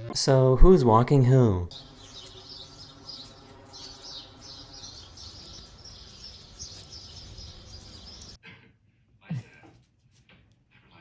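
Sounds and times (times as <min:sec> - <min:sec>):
small birds chirping: 0:01.7 - 0:08.4.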